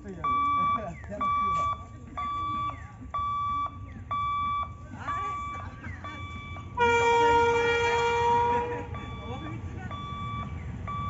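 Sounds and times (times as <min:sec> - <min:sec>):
level-crossing warning beeps: 0:00.0 - 0:11.0
locomotive horn blast: 0:06.7 - 0:09.1.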